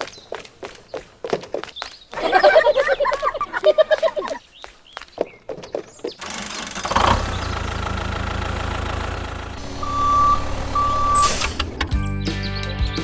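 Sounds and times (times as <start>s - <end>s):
engine starting and running: 6.1s - 12.2s
reversing alarm beeps: 9.6s - 11.9s.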